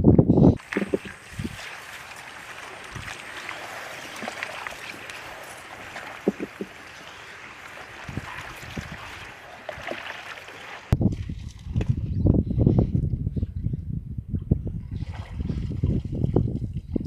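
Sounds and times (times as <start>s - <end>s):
water sloshing and trickling: 0.6s - 11.6s.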